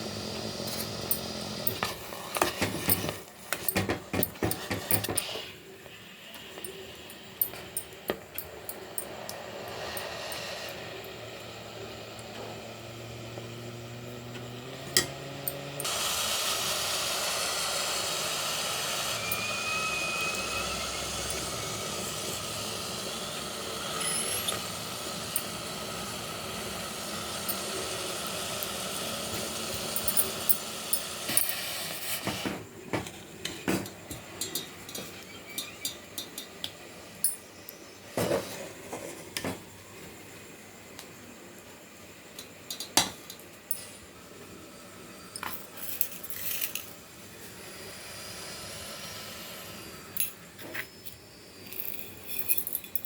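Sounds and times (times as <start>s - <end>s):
steady hissing rush: 0.0s - 3.0s, 4.4s - 13.7s, 15.8s - 38.9s, 43.7s - 51.9s
kitchen utensils and dishes clinking: 0.7s - 5.6s, 33.0s - 36.6s.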